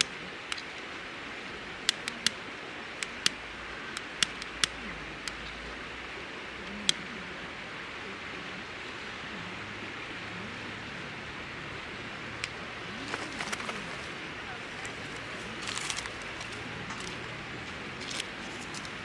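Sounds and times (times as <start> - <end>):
campfire crackling and popping: 0.0 - 0.9, 1.8 - 5.4.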